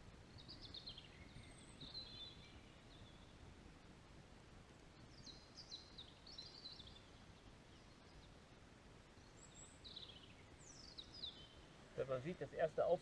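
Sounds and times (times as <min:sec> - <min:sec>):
songbird twittering: 0:00.3 - 0:03.4, 0:05.0 - 0:08.4, 0:09.1 - 0:12.7.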